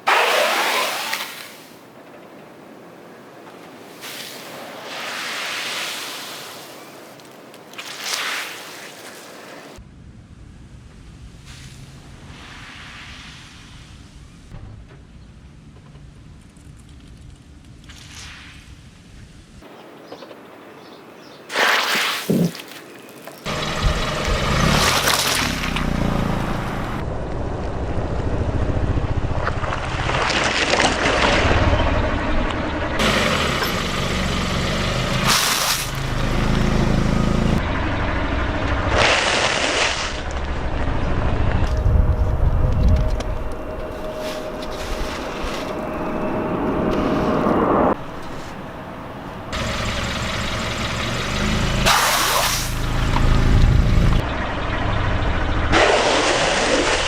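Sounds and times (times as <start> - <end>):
steady low rumble: 23.5 - 51.8, 52.7 - 55.8
car engine running low: 23.5 - 55.8.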